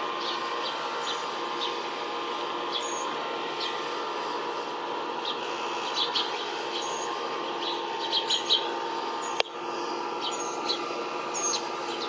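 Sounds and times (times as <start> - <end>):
steady background hum: 0.0 - 12.0
small birds chirping: 2.7 - 3.8, 5.2 - 12.0.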